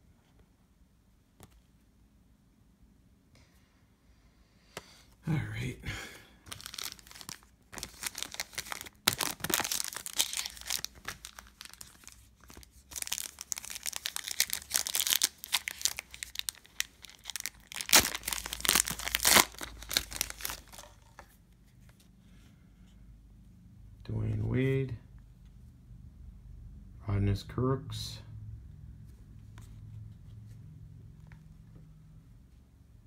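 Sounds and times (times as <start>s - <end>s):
foil wrapper tearing and crinkling: 6.5s - 21.0s.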